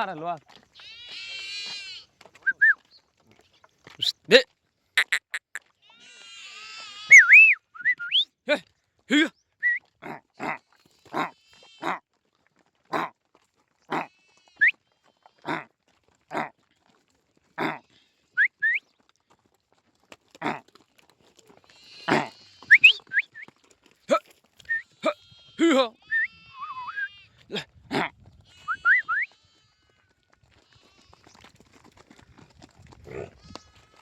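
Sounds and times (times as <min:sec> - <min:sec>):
short buffalo calls: 0:04.0 - 0:05.6, 0:06.4 - 0:12.0, 0:12.9 - 0:13.1, 0:13.9 - 0:14.7, 0:15.4 - 0:15.7, 0:16.3 - 0:16.5, 0:17.6 - 0:18.8, 0:20.4 - 0:20.6, 0:21.8 - 0:23.4, 0:24.1 - 0:29.3.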